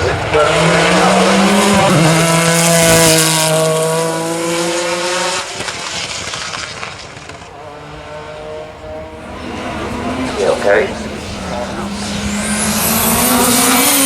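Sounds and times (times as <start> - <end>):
race car engine high revs: 0.0 - 14.0.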